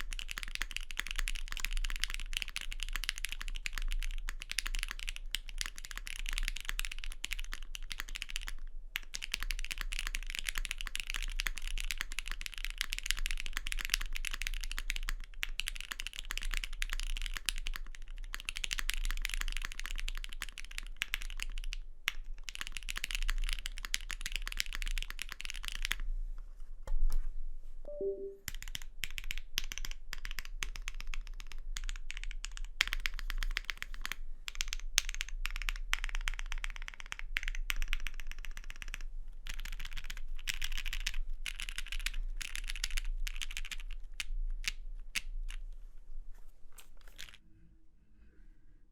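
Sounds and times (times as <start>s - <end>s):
mechanical keyboard typing: 0.0s - 21.7s.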